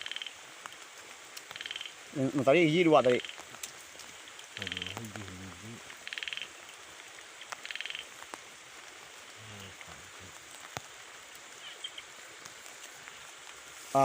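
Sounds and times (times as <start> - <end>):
frog buzzy trills: 0.0 - 0.4, 1.5 - 2.0, 3.0 - 3.5, 4.5 - 6.6, 7.5 - 8.2, 9.3 - 10.4
steady background hiss: 0.0 - 14.0
faint voice murmur: 4.6 - 5.8.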